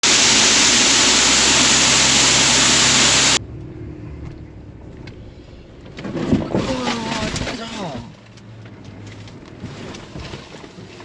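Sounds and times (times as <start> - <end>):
loud rushing noise: 0.0 - 3.6
low vehicle hum: 0.0 - 11.0
low rumble: 0.2 - 6.6.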